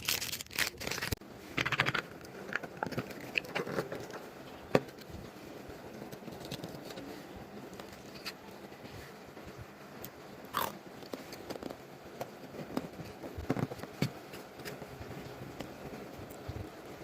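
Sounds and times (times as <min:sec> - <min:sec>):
packaging rustles and clicks: 0:00.0 - 0:04.2.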